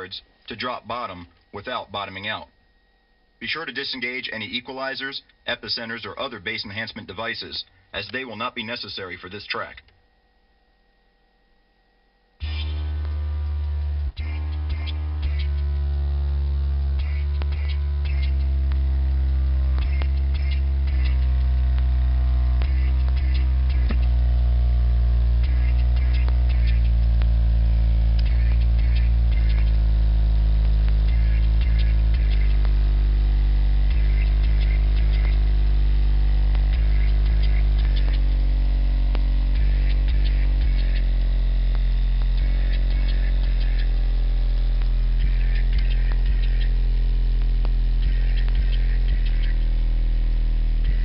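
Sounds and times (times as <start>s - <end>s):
deep sub-bass hum: 12.4s - 51.0s
short clicks and buzzes: 12.4s - 51.0s.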